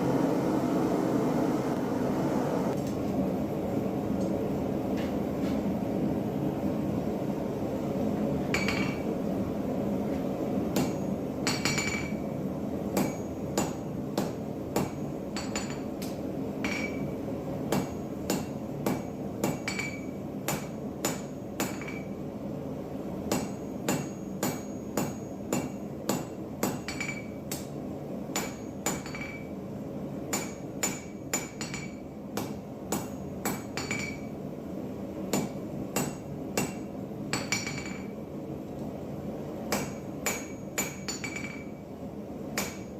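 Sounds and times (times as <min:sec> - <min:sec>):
hammer striking steel on anvil: 0:08.5 - 0:09.1, 0:10.7 - 0:12.2, 0:12.9 - 0:17.1, 0:17.7 - 0:22.2, 0:23.3 - 0:29.5, 0:30.3 - 0:34.4, 0:35.3 - 0:38.2, 0:39.7 - 0:41.8, 0:42.5 - 0:42.9.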